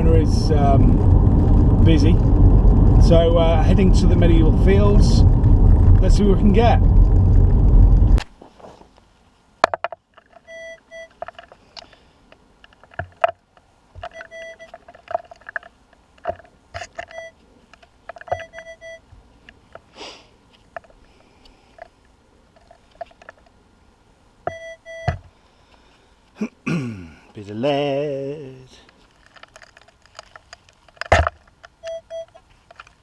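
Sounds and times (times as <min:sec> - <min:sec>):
metal detector beeping: 0:10.4 - 0:11.3, 0:14.0 - 0:14.8, 0:16.8 - 0:17.4, 0:18.2 - 0:19.0, 0:24.5 - 0:25.2, 0:31.8 - 0:32.4.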